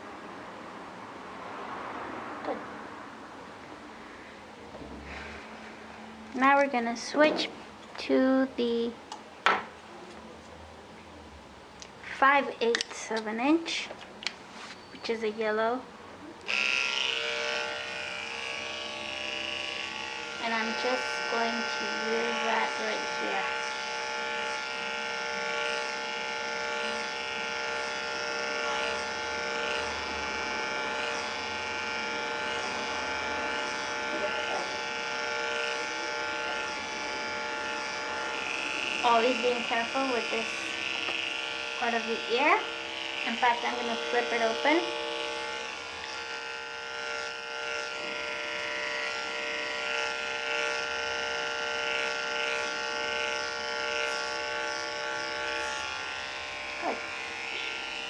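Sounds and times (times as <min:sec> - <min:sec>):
dog clipper buzzing: 0:06.3 - 0:07.6, 0:11.8 - 0:13.9, 0:16.4 - 0:58.0.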